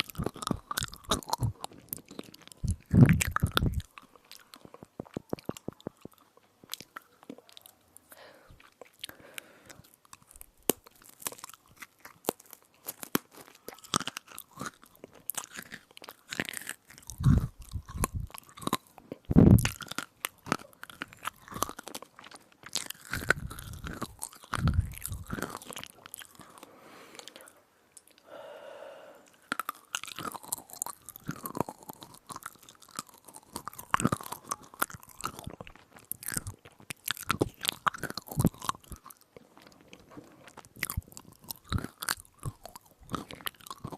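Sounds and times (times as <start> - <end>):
crunching and chewing: 0.0 - 28.3, 29.2 - 43.9
low thumps: 19.3 - 19.6.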